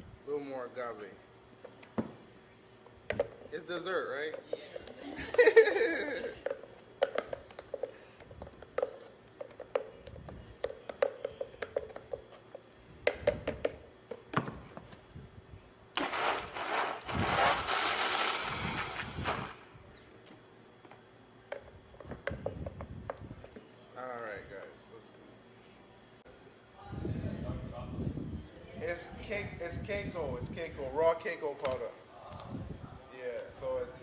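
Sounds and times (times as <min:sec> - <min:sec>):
blender running: 0:16.0 - 0:19.7.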